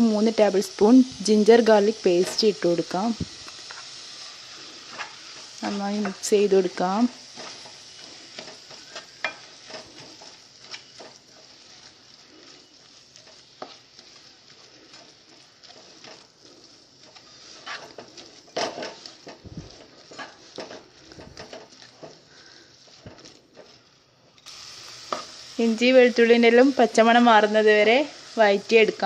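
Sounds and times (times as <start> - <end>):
onions sizzling in oil: 0.0 - 29.0
spoon scraping and tapping pan: 7.4 - 11.2, 20.0 - 20.8.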